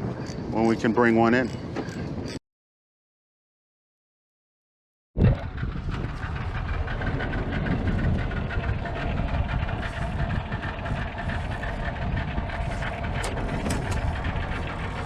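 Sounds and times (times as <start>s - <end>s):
boat engine rumbling: 5.2s - 15.0s.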